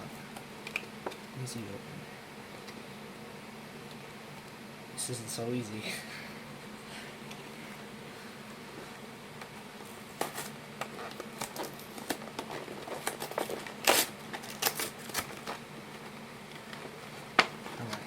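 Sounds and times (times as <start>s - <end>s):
plastic packaging crinkling: 10.2s - 16.9s.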